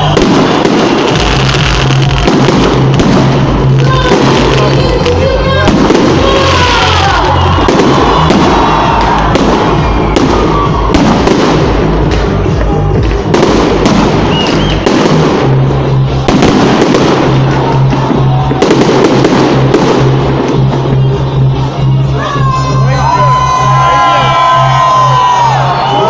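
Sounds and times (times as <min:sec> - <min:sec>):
fireworks whistling: 0:00.0 - 0:05.0, 0:05.6 - 0:11.8, 0:13.3 - 0:22.1
fireworks bangs and crackles: 0:00.0 - 0:22.0
loud music: 0:00.0 - 0:26.0.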